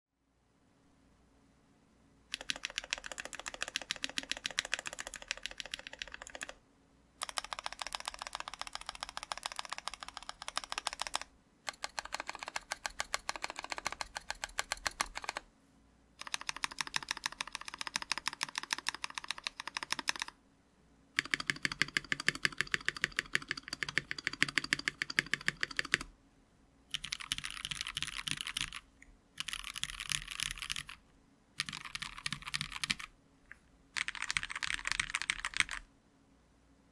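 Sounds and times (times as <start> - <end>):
mechanical keyboard typing: 2.3 - 6.6, 7.2 - 15.4, 16.2 - 20.4, 21.2 - 26.1, 26.9 - 31.0, 31.6 - 33.1, 34.0 - 35.9.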